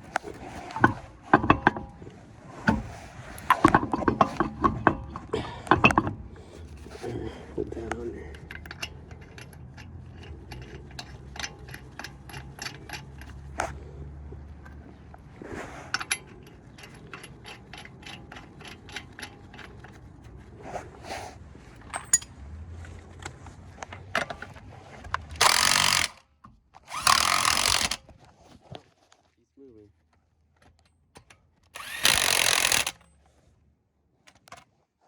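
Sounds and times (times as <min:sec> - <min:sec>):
socket ratchet clicking: 0:25.4 - 0:26.2, 0:26.9 - 0:28.0, 0:31.8 - 0:33.0.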